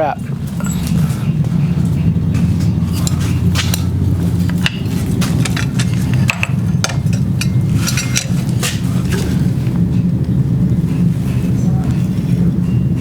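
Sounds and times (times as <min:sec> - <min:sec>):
low hum: 0:00.0 - 0:13.0
hammer striking metal on anvil: 0:02.5 - 0:09.4.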